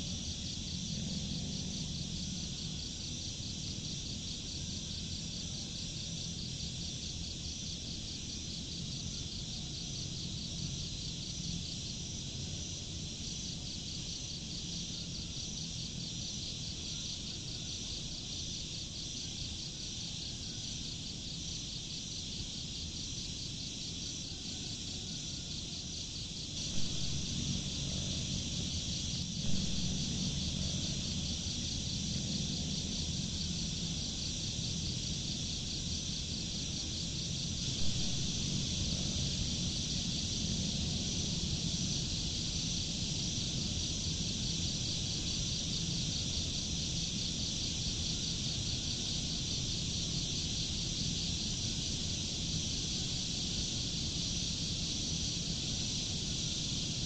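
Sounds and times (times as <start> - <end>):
crickets chirping: 0.0 - 57.0
low rumble: 26.6 - 33.8, 37.6 - 42.0.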